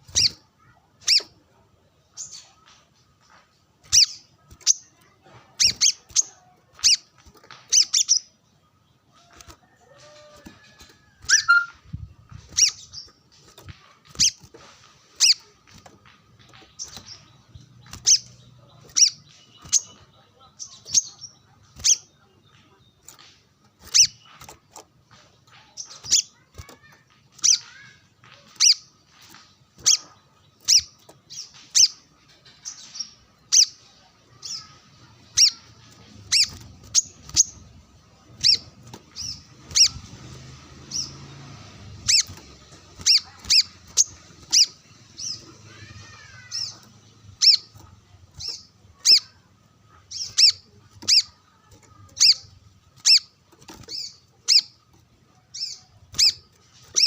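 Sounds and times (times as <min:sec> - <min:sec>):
bird calling sharp high notes: 0:11.2 - 0:11.8.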